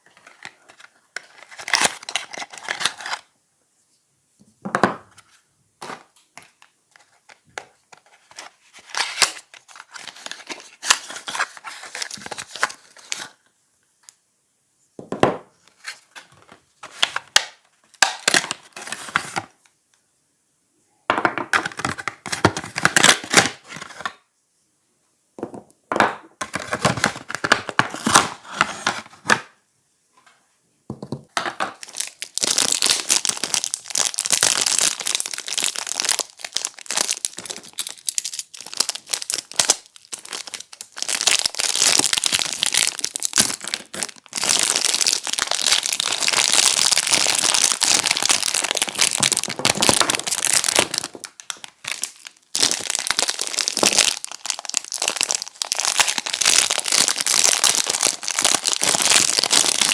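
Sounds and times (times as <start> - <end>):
wrapper crinkling: 0.0 - 3.3, 5.8 - 13.4, 31.6 - 59.9.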